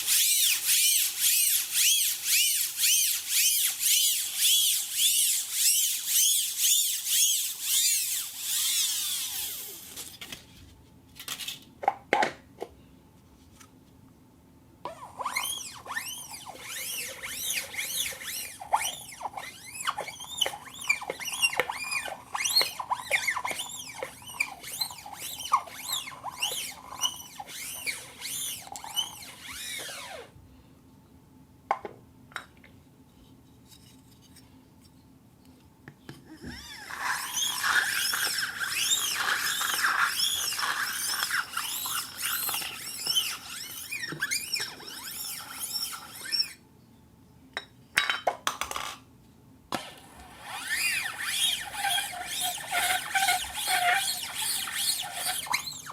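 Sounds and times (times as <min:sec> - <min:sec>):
plastic cup squeaking on turntable: 0:00.0 - 0:10.1, 0:14.9 - 0:30.3, 0:36.4 - 0:46.6, 0:49.8 - 0:55.9.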